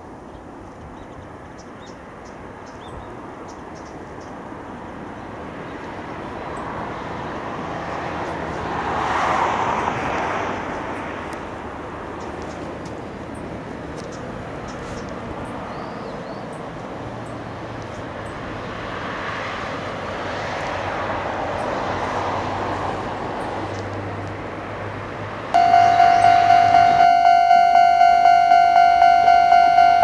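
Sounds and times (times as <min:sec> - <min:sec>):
outdoor noise rushing: 0:00.0 - 0:30.0
level-crossing warning bell: 0:25.6 - 0:30.0.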